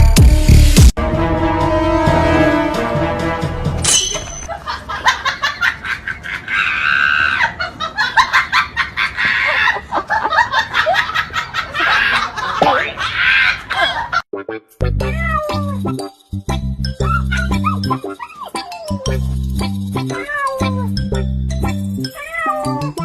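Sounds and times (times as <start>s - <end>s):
people laughing and shrieking: 4.5s - 14.2s.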